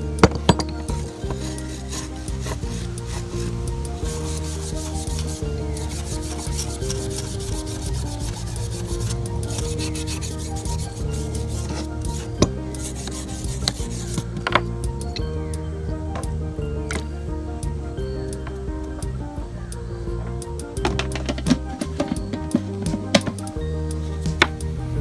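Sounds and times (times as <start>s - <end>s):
background music low notes: 0.0s - 25.0s
rasping rubs on metal wrench: 0.2s - 14.7s.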